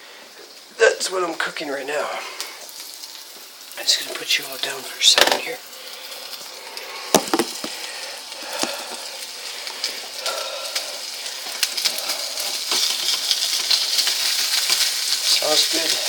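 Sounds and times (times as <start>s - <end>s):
meat and onions sizzling in a pan: 0.0s - 16.0s
sharp knocks: 7.2s - 7.7s.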